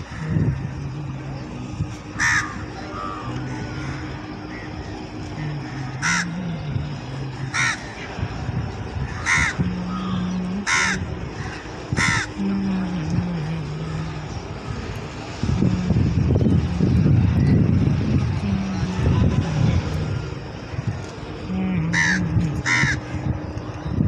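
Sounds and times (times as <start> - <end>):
low humming tone: 0.0 - 24.0
crow cawing: 2.2 - 4.8, 6.0 - 6.3, 7.5 - 8.0, 9.1 - 12.4, 22.0 - 23.1.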